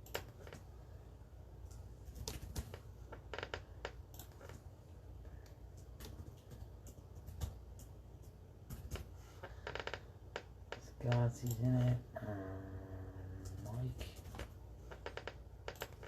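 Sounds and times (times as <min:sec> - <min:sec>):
keyboard and mouse clicks: 0:01.6 - 0:04.7, 0:05.4 - 0:09.1, 0:13.4 - 0:16.0.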